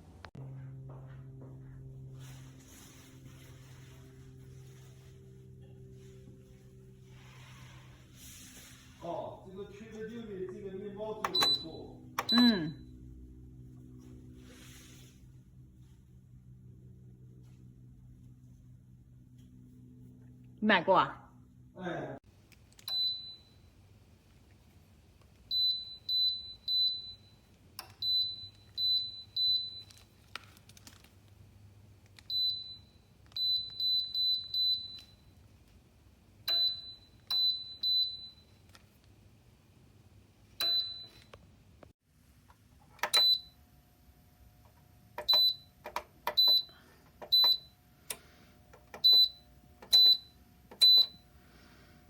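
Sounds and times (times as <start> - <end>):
faint steady hum: 0.0 - 52.0.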